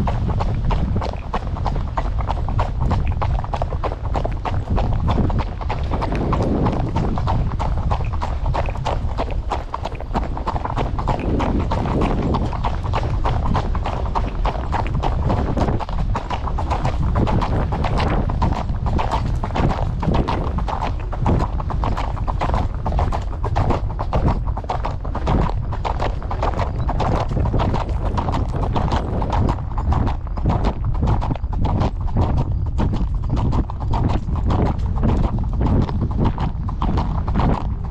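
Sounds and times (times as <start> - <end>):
low rumble: 0.0 - 25.7
horse hooves clip-clopping: 0.0 - 37.9.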